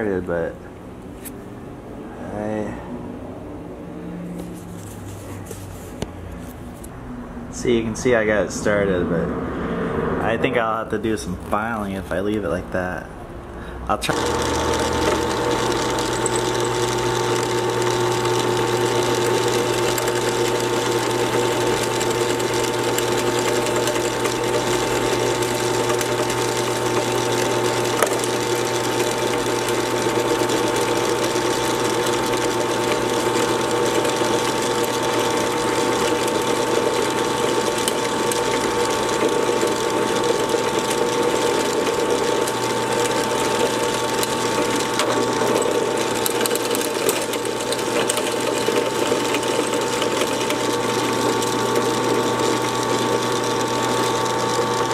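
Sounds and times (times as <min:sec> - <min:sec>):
drill press cutting metal: 0:14.1 - 0:54.9.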